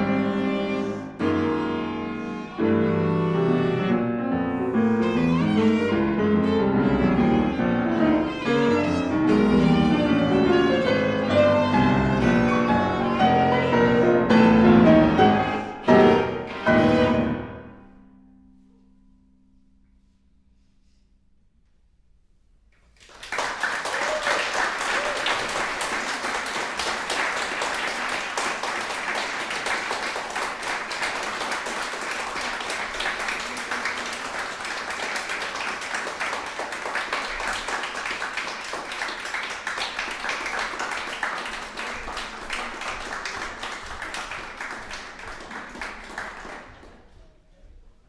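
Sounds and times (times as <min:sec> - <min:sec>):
audience applauding: 0:22.8 - 0:47.2.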